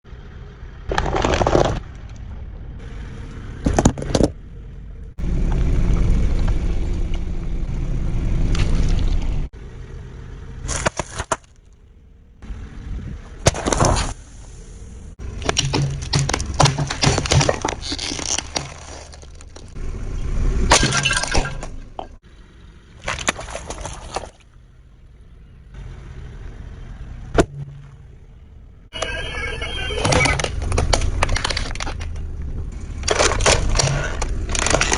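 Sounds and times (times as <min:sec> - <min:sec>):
low vehicle rumble: 0:00.0 - 0:34.9
objects cracking and breaking: 0:00.8 - 0:02.4, 0:15.2 - 0:19.8, 0:20.7 - 0:22.2, 0:30.0 - 0:34.9.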